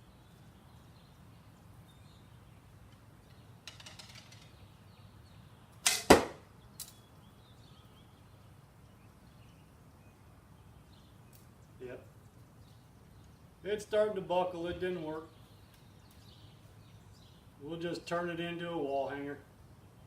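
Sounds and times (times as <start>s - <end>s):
bow rattle: 2.9s - 4.6s.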